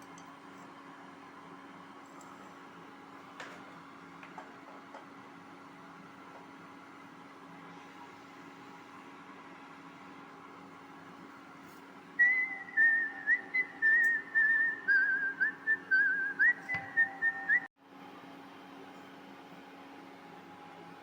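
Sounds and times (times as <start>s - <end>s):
high warbling whistle: 12.2s - 17.7s.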